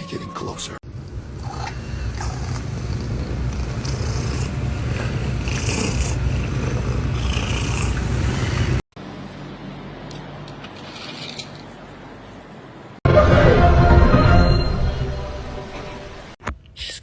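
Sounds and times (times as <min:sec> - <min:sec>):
cat purring: 0:01.0 - 0:08.9.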